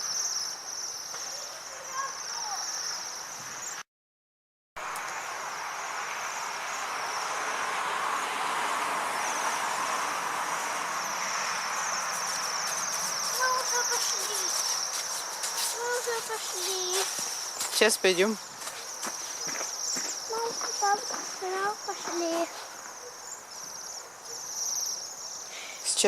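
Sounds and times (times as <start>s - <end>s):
small birds twittering: 0.0s - 3.8s, 9.1s - 9.9s, 10.9s - 26.0s.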